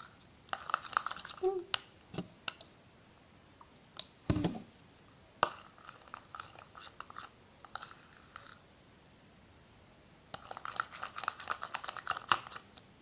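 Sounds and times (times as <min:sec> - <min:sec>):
spoon stirring squishy slime: 0:05.4 - 0:08.6, 0:10.4 - 0:12.7.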